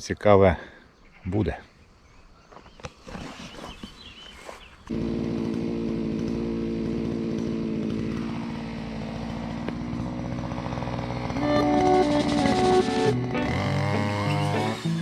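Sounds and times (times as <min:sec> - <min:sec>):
brush cutter engine running: 0:04.9 - 0:15.0.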